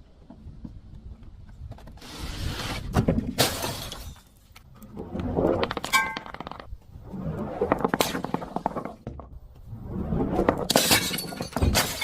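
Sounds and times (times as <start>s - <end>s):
sharp breaking crashes: 3.4s - 4.4s, 10.6s - 12.0s.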